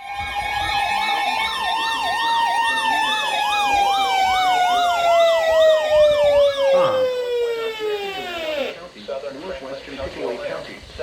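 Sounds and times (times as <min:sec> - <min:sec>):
warbling siren alarm tone: 0:00.0 - 0:08.8.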